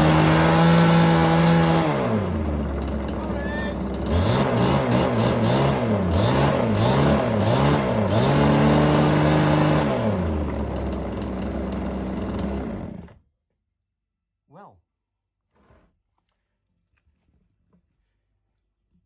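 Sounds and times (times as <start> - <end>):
chainsaw engine revving: 0.0 - 13.2.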